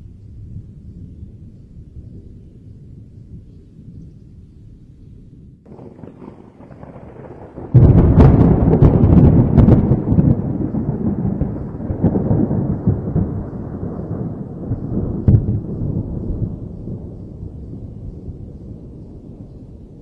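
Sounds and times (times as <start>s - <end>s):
low thunder rumble: 0.0s - 20.0s
thunder crack: 5.7s - 20.0s.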